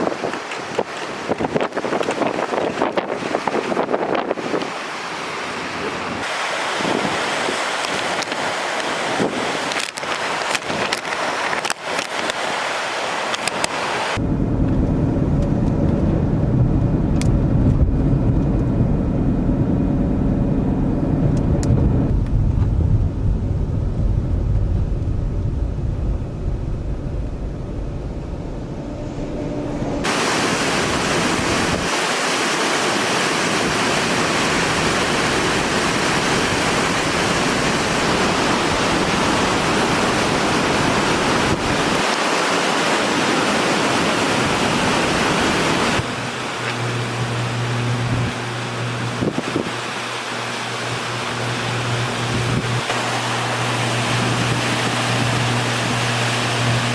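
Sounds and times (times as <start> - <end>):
wind buffeting microphone: 0.0 - 4.8, 13.5 - 32.6, 33.4 - 46.2, 48.0 - 50.0, 51.4 - 56.9
storm wind and water rushing: 0.0 - 56.9.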